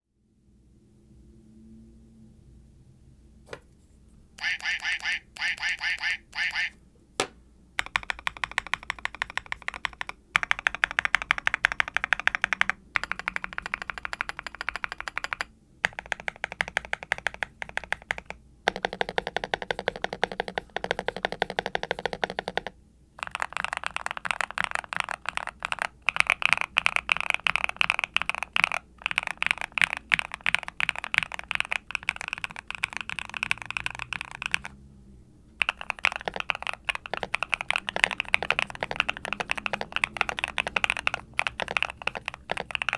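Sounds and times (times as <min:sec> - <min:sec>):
fast mechanical keyboard typing: 0:07.8 - 0:34.8, 0:35.6 - 0:42.9.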